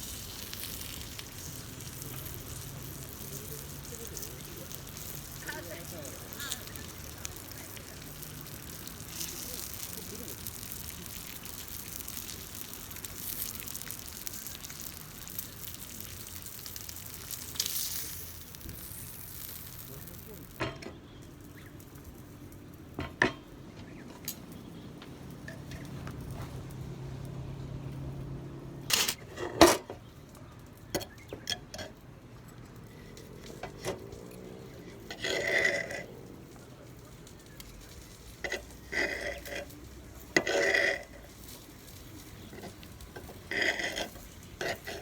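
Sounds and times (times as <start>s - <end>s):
food sizzling in a pot: 0.0s - 22.4s.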